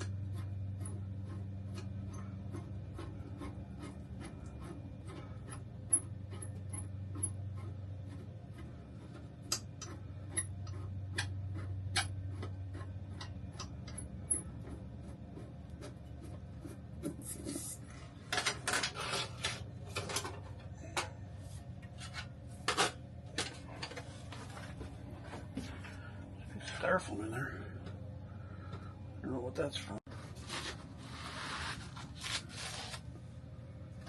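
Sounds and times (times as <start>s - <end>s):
low steady hum: 0.0s - 34.0s
scraping and rubbing: 30.1s - 33.1s.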